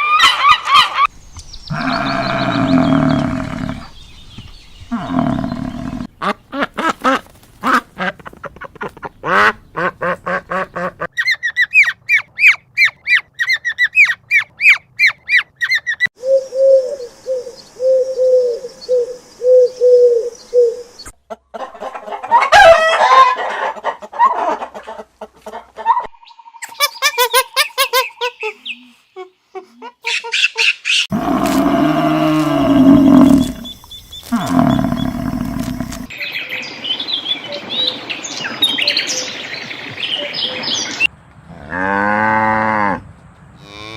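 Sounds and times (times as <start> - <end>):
long low droning animal call: 1.7 - 3.9, 31.1 - 36.1.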